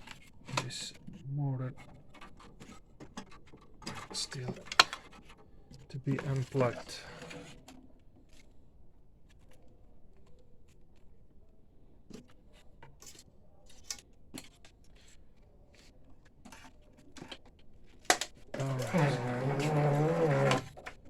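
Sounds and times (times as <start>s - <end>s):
soft scrapes: 6.1s - 7.7s, 18.6s - 20.8s.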